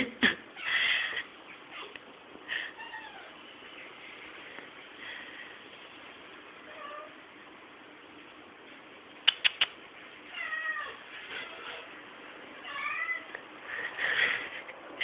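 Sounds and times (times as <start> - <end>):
sharp clicks: 9.2 - 9.8.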